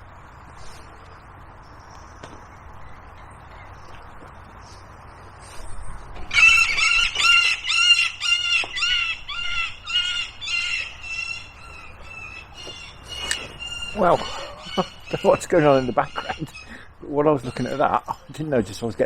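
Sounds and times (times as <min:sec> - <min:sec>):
bird squawking harshly: 0:06.3 - 0:16.8.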